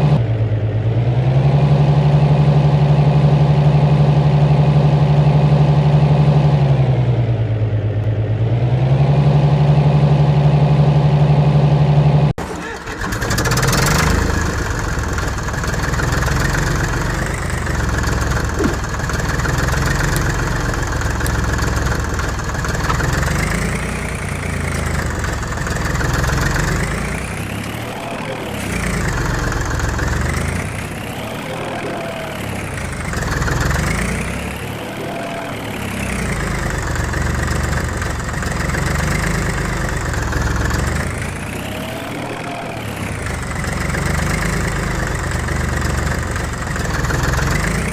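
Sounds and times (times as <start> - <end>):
heavy machine engine idling: 12.4 - 47.9.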